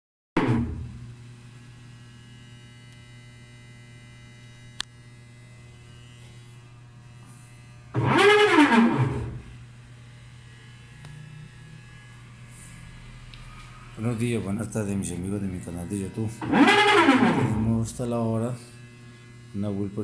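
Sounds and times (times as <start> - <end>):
washing machine groan: 0.4 - 1.1, 8.0 - 9.6, 16.4 - 18.0.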